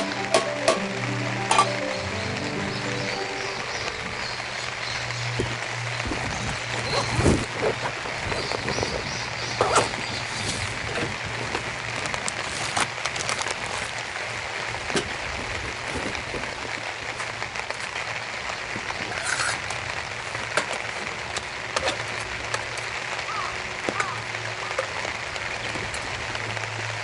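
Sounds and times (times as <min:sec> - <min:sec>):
raindrops ticking near microphone: 0:00.0 - 0:27.0
steady rain falling: 0:00.0 - 0:27.0.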